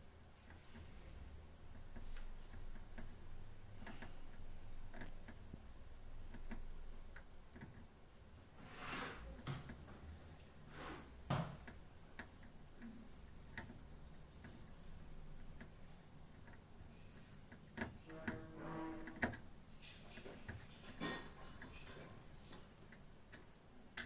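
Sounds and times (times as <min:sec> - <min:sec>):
tools clicking and tapping: 0:01.7 - 0:05.5, 0:17.2 - 0:24.0.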